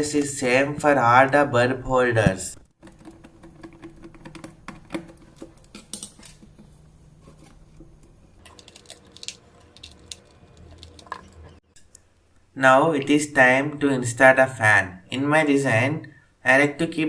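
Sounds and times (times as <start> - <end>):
small metal parts clinking: 5.6 - 6.4, 8.4 - 11.5.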